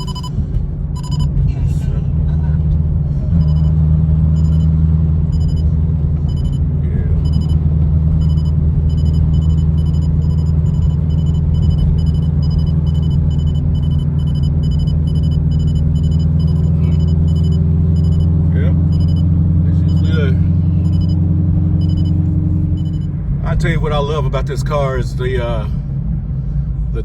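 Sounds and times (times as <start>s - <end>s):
car engine and exhaust droning: 0.0s - 27.0s.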